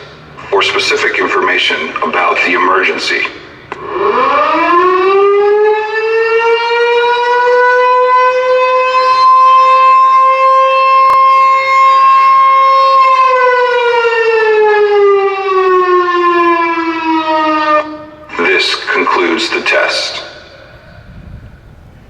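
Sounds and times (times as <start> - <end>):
mechanical siren wailing: 3.7 - 18.5.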